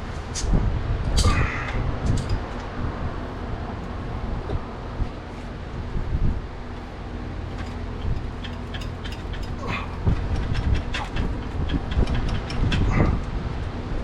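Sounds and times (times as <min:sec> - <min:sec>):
steady low hum: 0:00.0 - 0:14.0
metallic clicks of hand tools: 0:07.6 - 0:12.8.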